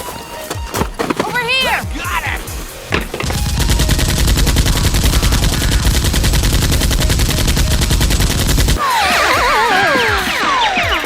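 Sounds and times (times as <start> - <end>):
automatic gunfire: 2.9 - 9.3.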